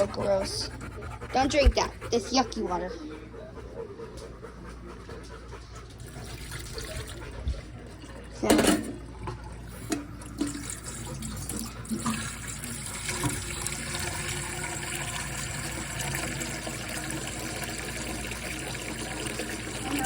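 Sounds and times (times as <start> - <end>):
tap water running into bowl: 7.9 - 20.0.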